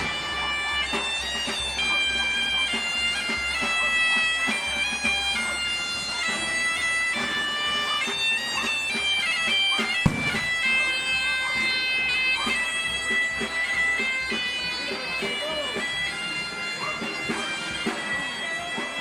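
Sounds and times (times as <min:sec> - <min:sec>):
bagpipe melody: 0:00.0 - 0:19.0
sharp knock: 0:10.1 - 0:10.5.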